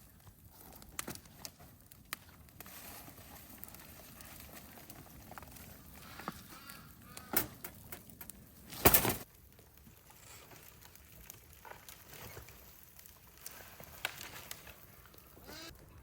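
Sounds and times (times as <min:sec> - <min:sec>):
birds calling faintly: 0:05.7 - 0:08.1
sharp crack: 0:06.7 - 0:09.3.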